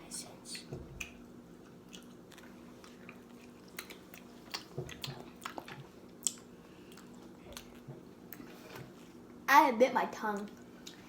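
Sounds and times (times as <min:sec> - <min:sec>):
low steady hum: 0:00.0 - 0:11.0
person chewing food: 0:00.6 - 0:09.2.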